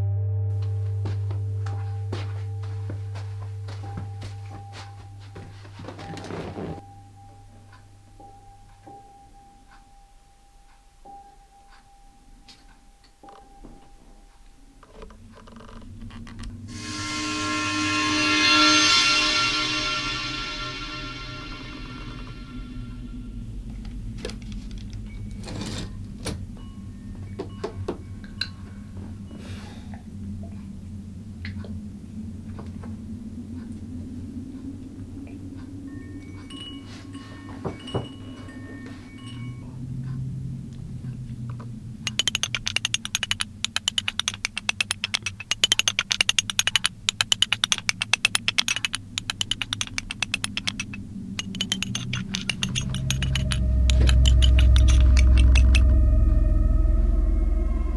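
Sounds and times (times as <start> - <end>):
steady low hum: 0.0 - 57.9
mechanical clicks and knocks: 41.6 - 56.0
manual typewriter typing: 42.0 - 55.9.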